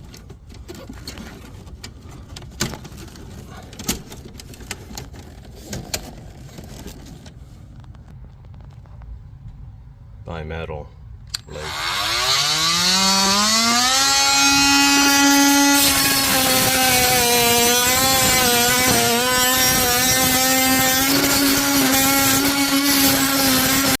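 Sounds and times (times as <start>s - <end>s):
reciprocating saw cutting metal: 11.4s - 24.0s.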